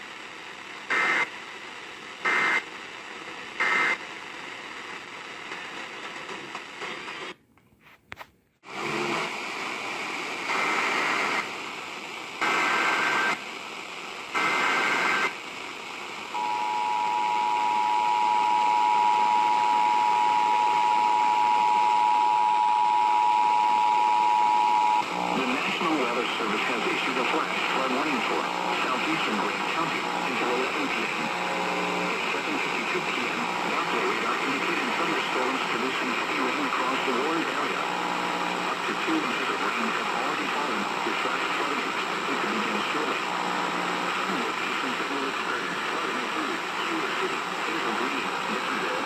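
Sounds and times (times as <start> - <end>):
radio hiss: 0.0 - 49.0
two-tone attention signal: 16.4 - 25.0
longer data tones: 16.4 - 25.6.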